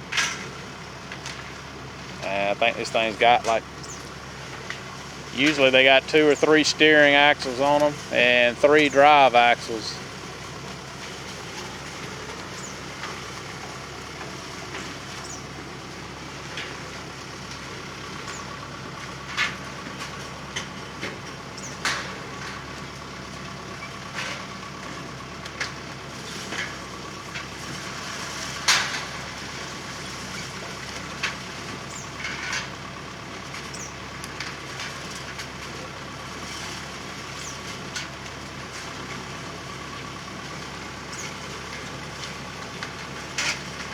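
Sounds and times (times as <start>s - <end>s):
harvesting machine engine running: 0.0s - 43.9s.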